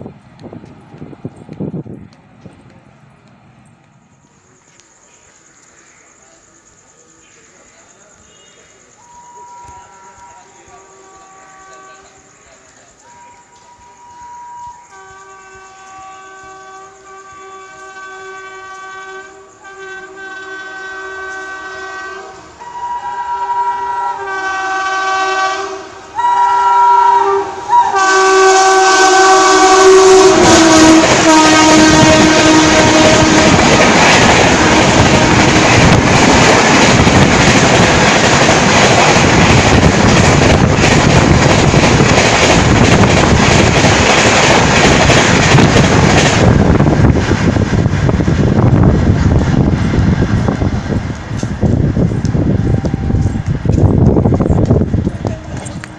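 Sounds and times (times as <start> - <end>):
train rushing past: 0.0 - 55.9
train horn blasts: 8.2 - 12.3, 13.0 - 36.4, 52.1 - 53.9.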